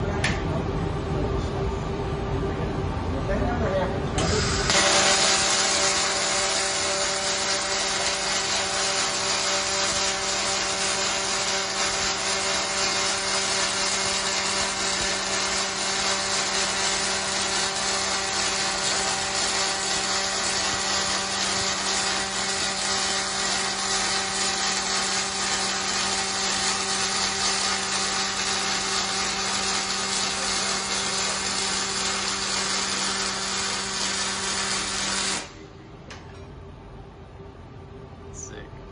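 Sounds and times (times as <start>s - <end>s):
low electrical hum: 0.0s - 38.9s
welding arc hissing: 4.2s - 35.6s.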